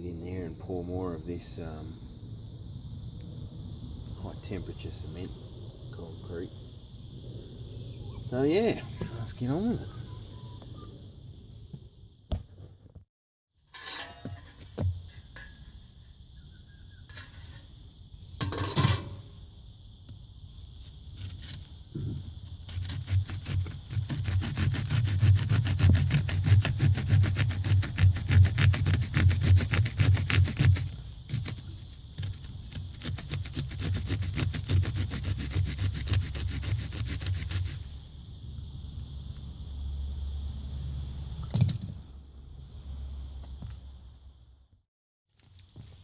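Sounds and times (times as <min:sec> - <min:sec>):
tool scraping wet cement: 0:22.7 - 0:37.9.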